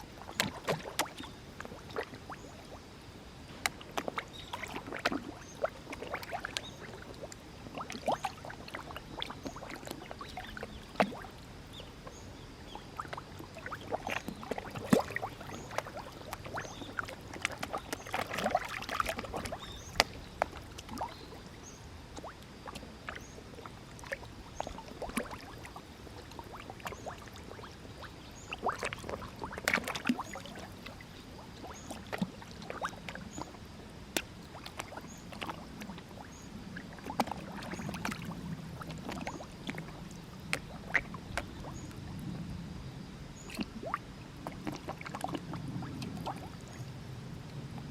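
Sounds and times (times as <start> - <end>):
fish splashing at water surface: 0.2 - 2.5, 13.0 - 21.4, 22.2 - 31.0, 34.2 - 41.9, 43.5 - 46.6.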